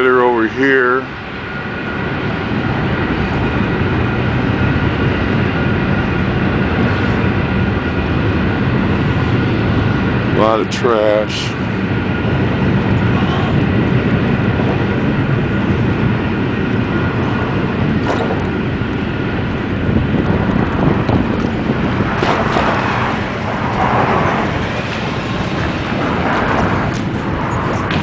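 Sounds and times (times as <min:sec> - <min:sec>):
traffic rumbling: 0:00.0 - 0:28.0
wind on microphone: 0:00.0 - 0:28.0.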